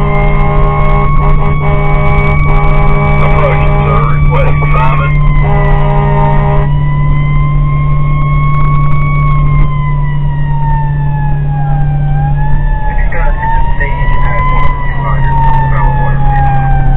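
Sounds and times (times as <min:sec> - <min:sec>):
horn blast: 0:00.0 - 0:06.8
fire engine siren wailing: 0:00.0 - 0:16.9
truck engine drone: 0:00.0 - 0:16.9.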